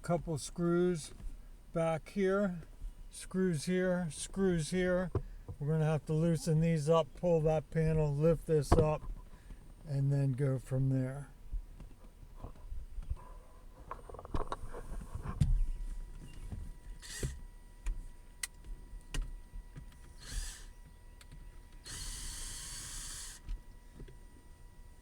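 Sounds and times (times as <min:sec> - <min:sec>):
cordless drill whirring: 0:16.8 - 0:17.4, 0:19.8 - 0:23.7.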